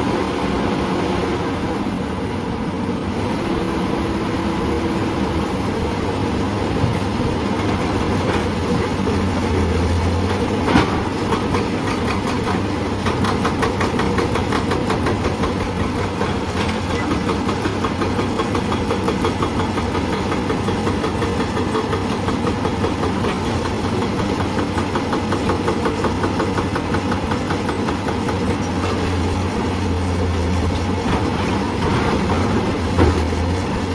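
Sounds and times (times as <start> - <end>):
hydraulic breaker hammering rock: 10.4 - 29.4.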